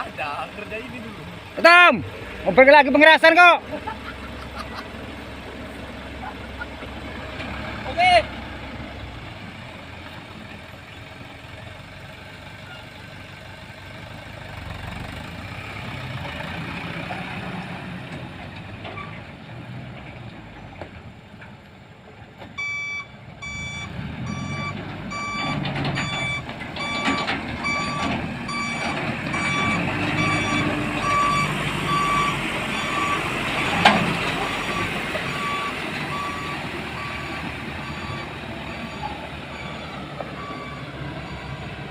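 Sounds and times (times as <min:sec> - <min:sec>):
heavy diesel machinery running: 0:00.0 - 0:41.9
backup alarm beeping: 0:22.6 - 0:41.9.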